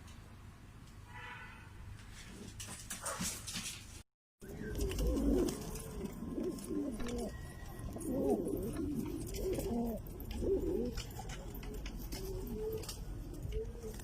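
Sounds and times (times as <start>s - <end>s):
pigeons cooing: 4.4s - 14.0s.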